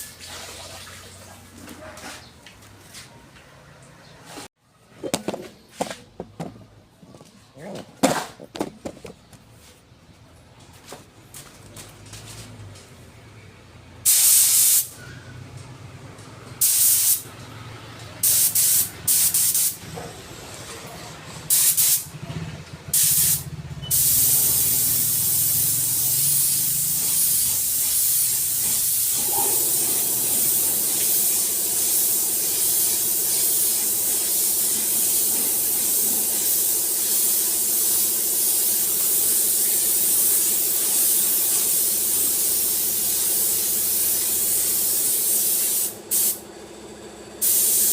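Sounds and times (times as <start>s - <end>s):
compressed air spray hissing: 14.1s - 15.0s, 16.6s - 17.2s, 18.2s - 19.8s, 21.5s - 22.1s, 22.9s - 46.4s, 47.4s - 47.9s.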